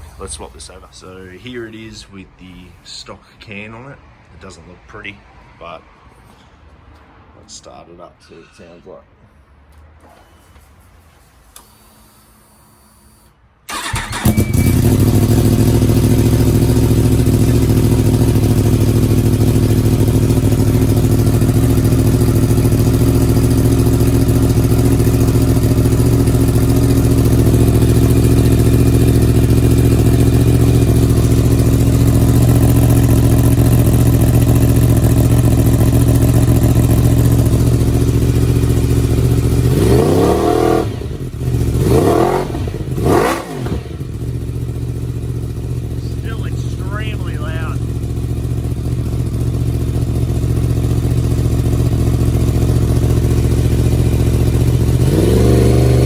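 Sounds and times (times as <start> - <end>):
motorcycle engine starting and idling: 10.0 - 56.0
motorcycle engine revving: 13.7 - 56.0.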